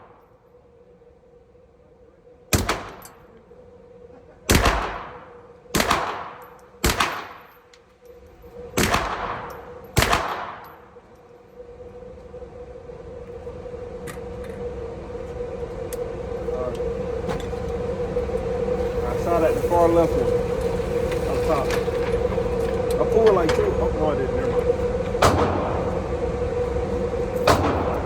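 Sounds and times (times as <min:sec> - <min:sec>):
steady hum: 0:00.0 - 0:28.0
carbine gunshots: 0:02.5 - 0:03.1, 0:04.5 - 0:07.5, 0:08.8 - 0:10.6, 0:25.2 - 0:25.8.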